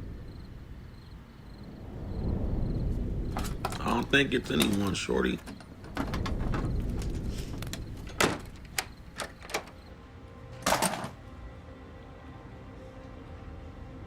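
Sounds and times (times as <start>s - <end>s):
low rumble: 0.0s - 5.0s, 5.7s - 9.2s
rustling or scraping burst: 5.8s - 8.8s.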